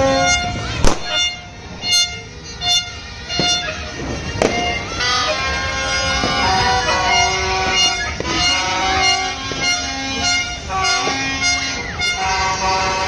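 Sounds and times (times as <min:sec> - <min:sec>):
fireworks crackle and rumble: 0:00.0 - 0:06.7, 0:07.6 - 0:12.1
horns honking: 0:00.0 - 0:13.0.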